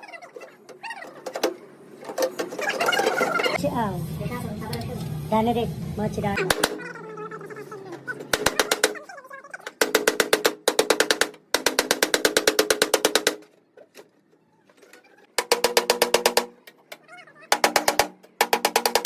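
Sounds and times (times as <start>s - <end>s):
impact wrench hammering: 6.4s - 6.8s, 8.3s - 9.0s, 9.8s - 13.5s, 15.4s - 16.8s, 17.5s - 19.0s.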